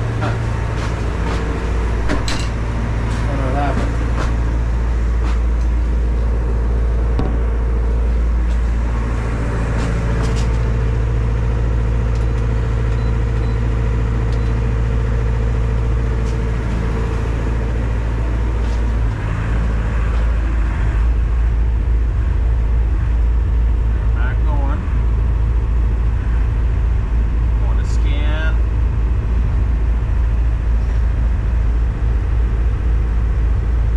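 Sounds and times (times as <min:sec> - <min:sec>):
engine idling: 0:00.0 - 0:33.9.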